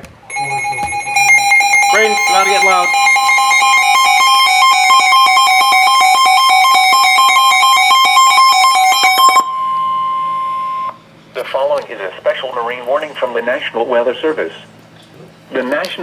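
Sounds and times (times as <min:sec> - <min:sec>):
steady alarm tone: 0:00.0 - 0:11.1
rapid electronic alert beeps: 0:00.3 - 0:11.0.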